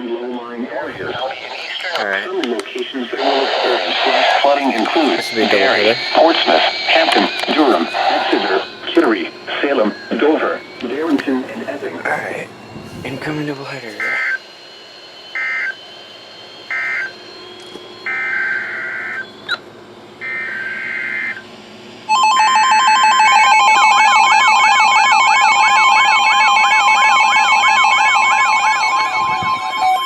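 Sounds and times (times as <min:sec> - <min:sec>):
raspy digital data bursts: 0:03.1 - 0:19.6.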